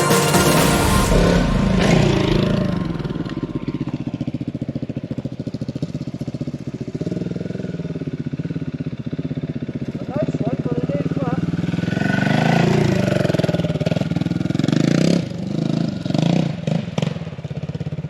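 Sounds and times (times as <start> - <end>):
background music: 0.0 - 4.3
motorcycle engine idling: 3.7 - 15.6.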